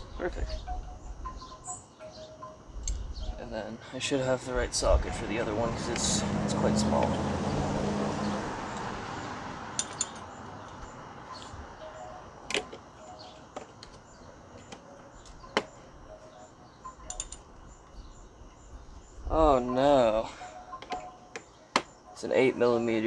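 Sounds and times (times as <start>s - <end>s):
tools clinking against metal: 9.7s - 14.0s, 14.6s - 17.6s, 20.4s - 21.9s.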